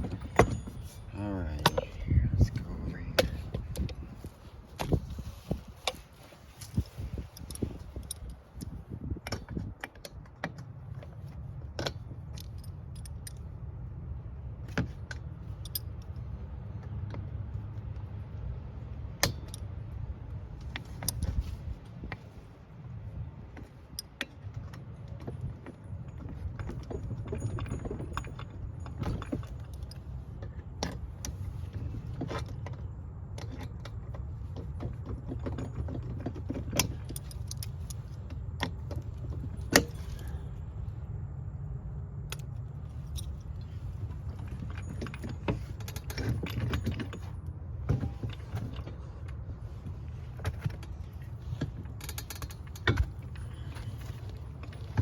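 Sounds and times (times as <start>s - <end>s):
steady low rumble: 0.0s - 55.0s
small metal parts clinking: 5.8s - 10.0s, 11.8s - 13.5s, 14.9s - 16.3s, 23.8s - 40.8s, 42.2s - 49.2s, 50.5s - 55.0s.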